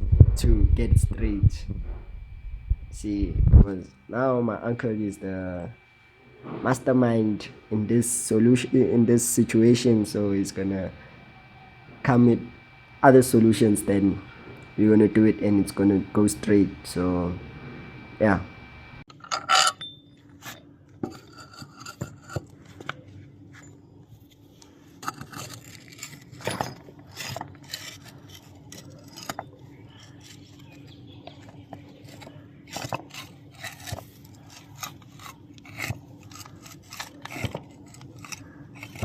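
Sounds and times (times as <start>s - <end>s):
faint steady hum: 0.0s - 39.0s
metal tools knocking and clinking: 19.2s - 21.2s.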